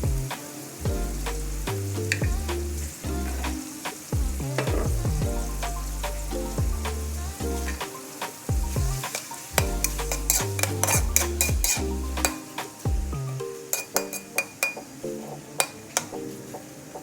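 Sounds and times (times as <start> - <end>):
background music with bass: 0.0 - 13.6
food sizzling: 0.0 - 17.0
utensil clinking against pan: 13.8 - 14.8.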